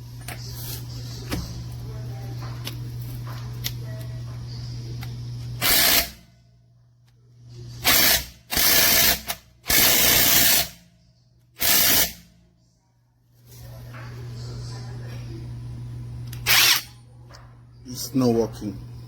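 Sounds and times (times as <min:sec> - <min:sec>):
impact wrench hammering: 0:05.6 - 0:06.2, 0:07.8 - 0:10.8, 0:11.6 - 0:12.3.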